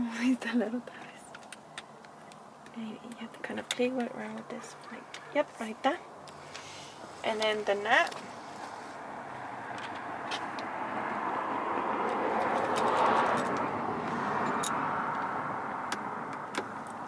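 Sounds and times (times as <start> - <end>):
vehicle passing: 5.9 - 17.0.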